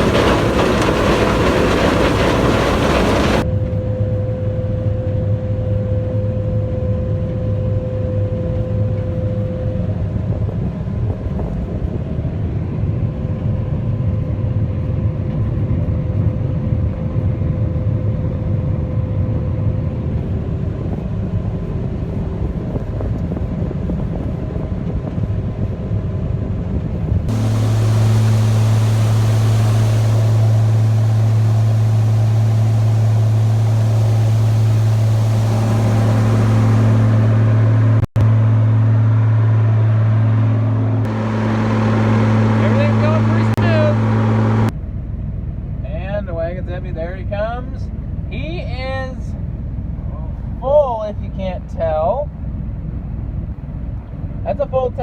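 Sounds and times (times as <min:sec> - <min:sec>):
machinery engine humming: 0:00.0 - 0:04.8, 0:26.9 - 0:45.8
faint steady whine: 0:00.0 - 0:24.4, 0:27.0 - 0:55.0.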